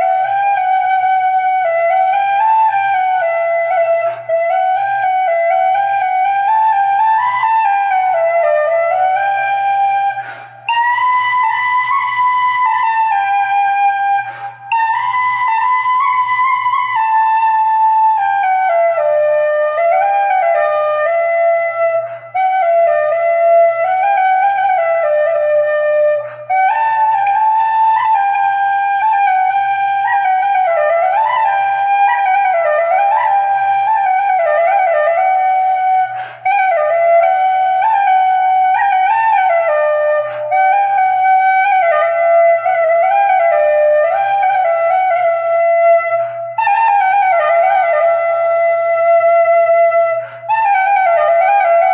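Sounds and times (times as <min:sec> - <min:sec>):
flute solo melody: 0:00.0 - 0:51.9.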